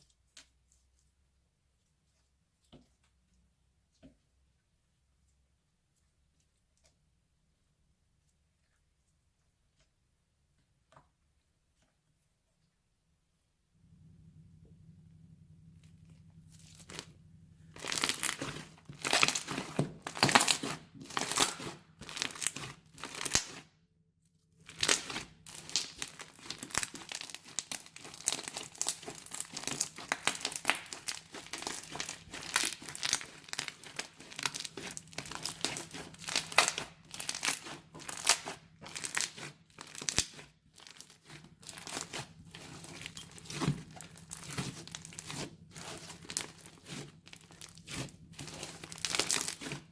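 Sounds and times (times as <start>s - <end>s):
crunchy slime crackling and popping: 15.7s - 23.7s, 24.6s - 49.9s.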